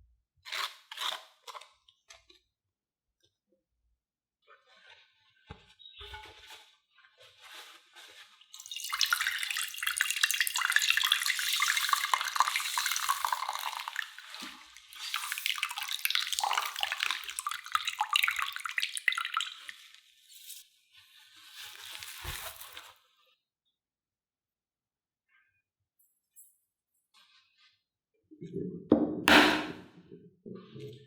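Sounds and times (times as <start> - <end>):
water running from a tap: 8.6 - 20.2, 21.6 - 22.9.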